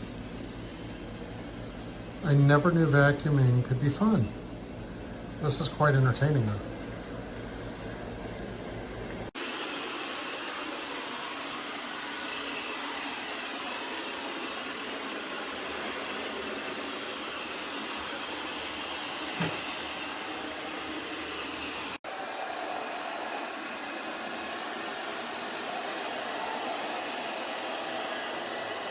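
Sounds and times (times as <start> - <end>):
robot vacuum cleaner running: 9.2 - 28.9.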